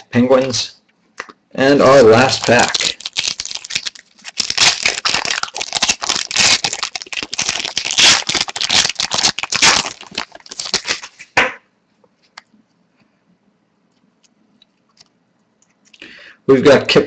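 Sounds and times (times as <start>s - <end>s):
wrapper tearing and crinkling: 1.8s - 11.3s.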